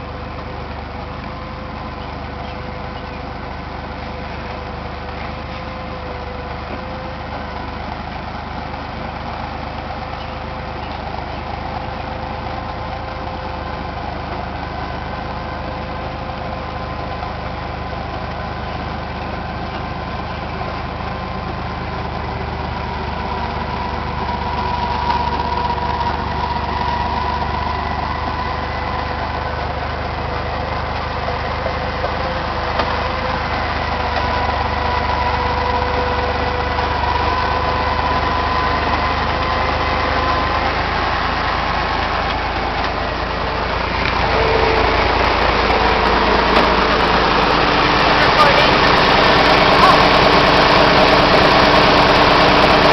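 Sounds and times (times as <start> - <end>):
bulldozer diesel engine running: 0.0 - 52.9
steady whine: 21.6 - 52.9.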